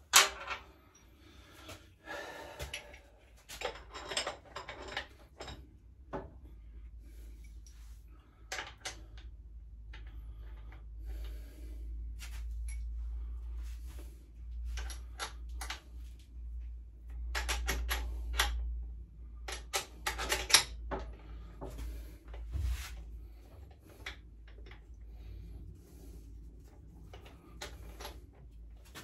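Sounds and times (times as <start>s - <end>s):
steady low hum: 5.1s - 29.0s.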